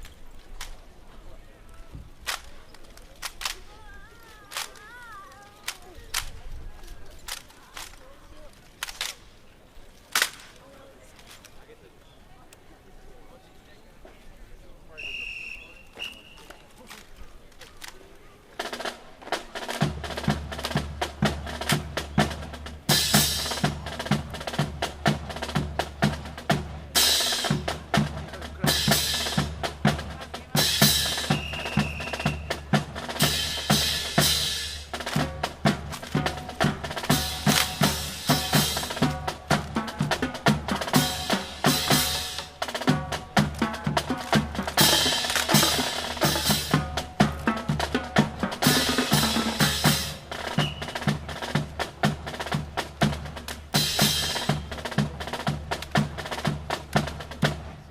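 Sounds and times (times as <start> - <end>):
bass drum and snare beat: 19.6 - 57.9.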